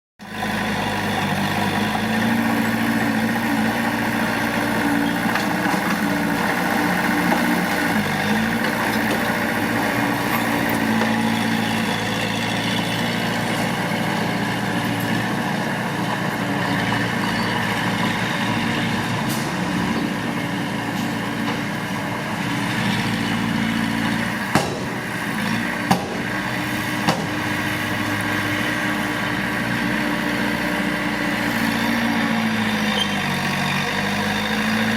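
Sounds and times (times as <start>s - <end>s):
bulldozer diesel engine running: 0.2s - 34.9s
sharp knocks: 24.6s - 25.0s, 25.9s - 26.3s, 27.0s - 27.4s.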